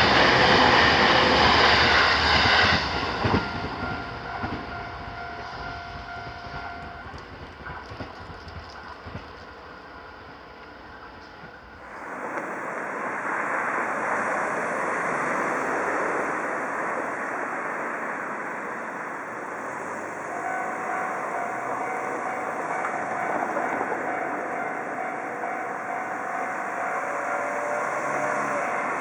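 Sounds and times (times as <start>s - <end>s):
train rushing past: 0.0s - 29.0s.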